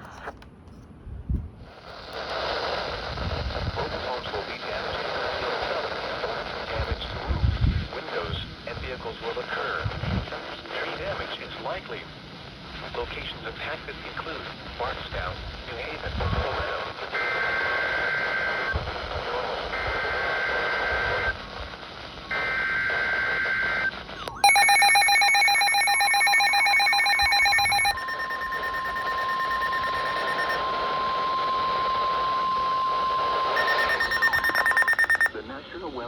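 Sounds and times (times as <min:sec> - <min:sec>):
pulsing electronic beep: 0:24.3 - 0:35.3
warbling data tones: 0:24.3 - 0:35.3
steady warning alarm tone: 0:24.4 - 0:35.3.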